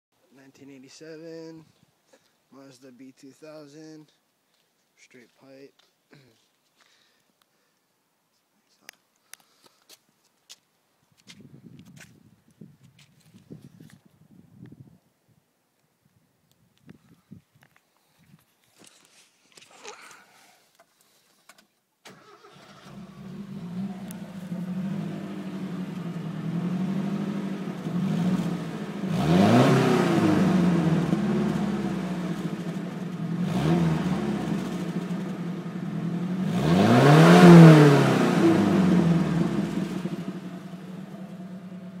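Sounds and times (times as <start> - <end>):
car engine idling: 22.1 - 42.0
engine revving: 22.1 - 42.0.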